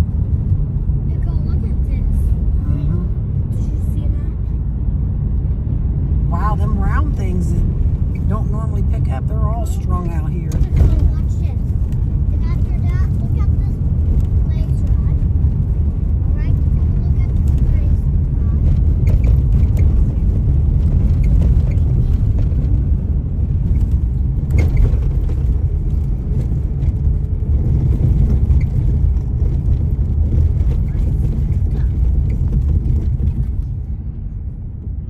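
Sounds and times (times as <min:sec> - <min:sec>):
car road and engine rumble: 0:00.0 - 0:35.0.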